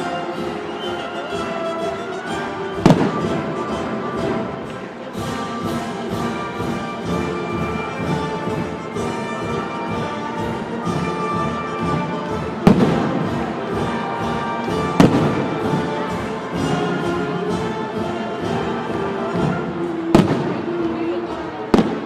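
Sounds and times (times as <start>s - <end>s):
orchestral music: 0.0s - 22.0s
firework bangs: 15.0s - 15.4s.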